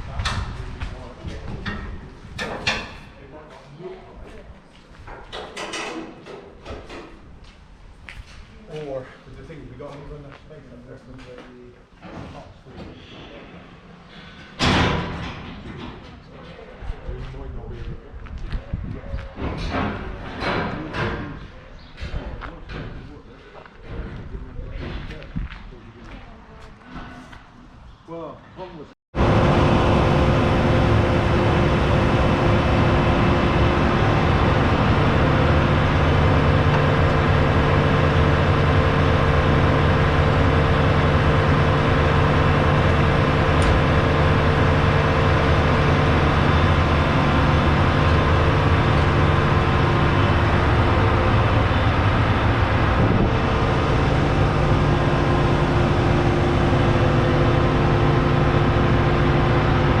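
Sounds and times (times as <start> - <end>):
combine harvester diesel drone: 29.2 - 60.0.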